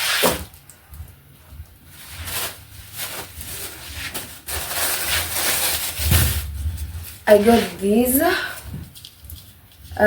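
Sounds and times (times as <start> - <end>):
shopping bag rustling: 1.9 - 8.4.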